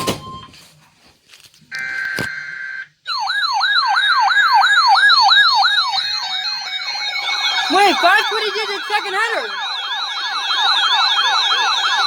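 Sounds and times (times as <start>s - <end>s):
siren-like alert tone: 6.2s - 12.0s.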